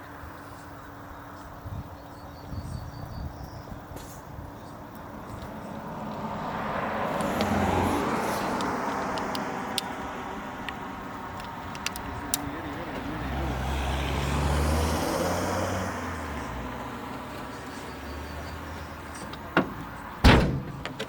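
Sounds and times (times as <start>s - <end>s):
car driving past: 5.4s - 10.5s, 12.8s - 20.2s.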